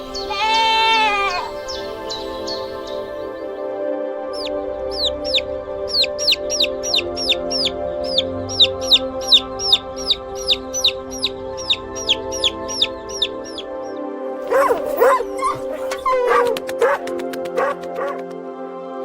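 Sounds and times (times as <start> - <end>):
background music: 0.0 - 19.0
chick peeping: 4.4 - 13.7.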